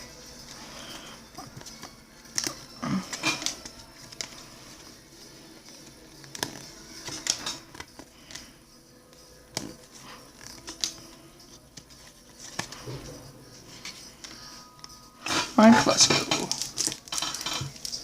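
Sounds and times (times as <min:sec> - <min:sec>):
cards being flipped through: 0:01.3 - 0:04.5, 0:05.6 - 0:08.5, 0:09.1 - 0:13.1.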